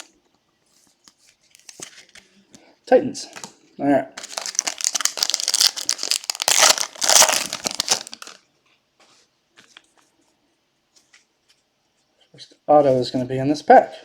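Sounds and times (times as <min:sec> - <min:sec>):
wrapper crinkling and tearing: 0:04.2 - 0:08.4.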